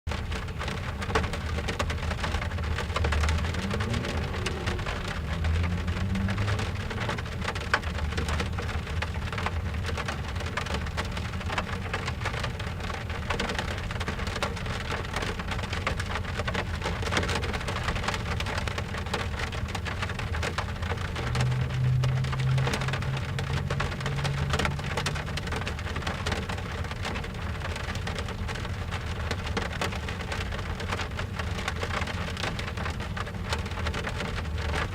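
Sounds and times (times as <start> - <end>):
rain drumming on car roof: 0.1 - 34.9
low rumbles: 0.2 - 12.0, 18.8 - 28.8.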